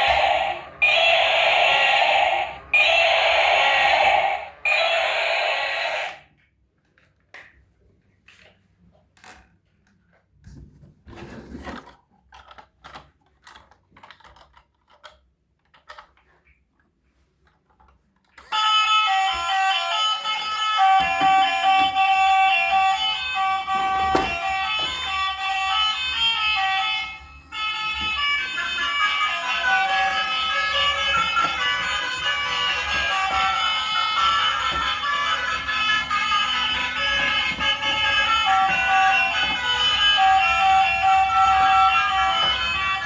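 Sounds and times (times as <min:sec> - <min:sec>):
electronic melody: 0:00.0 - 0:06.2, 0:18.6 - 0:43.0
loud electronic toy noise: 0:00.0 - 0:06.3, 0:18.4 - 0:43.0
plastic toys clicking: 0:11.8 - 0:18.5.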